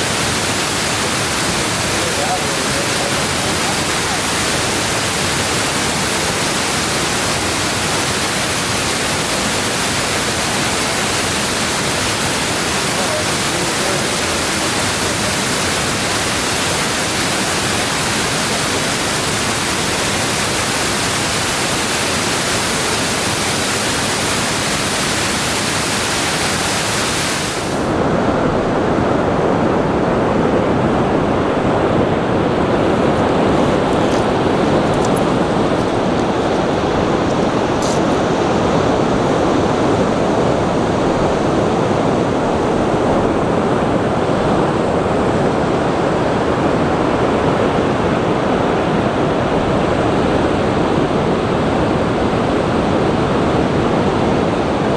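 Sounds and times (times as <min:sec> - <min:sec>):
waterfall rushing: 0:00.0 - 0:28.0, 0:32.6 - 0:39.8.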